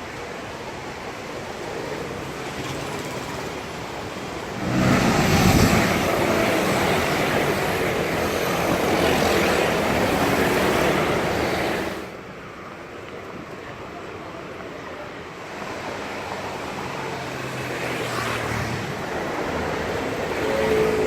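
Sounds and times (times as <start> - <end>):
passing road traffic: 0.0 - 21.0
heavy engine rumble: 4.3 - 9.0.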